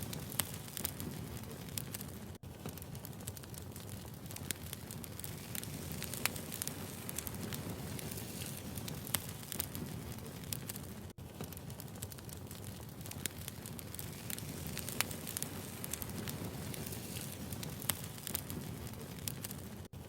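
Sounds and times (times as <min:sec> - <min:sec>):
fire rumbling: 0:00.0 - 0:20.0
logs crackling and popping: 0:00.0 - 0:20.0.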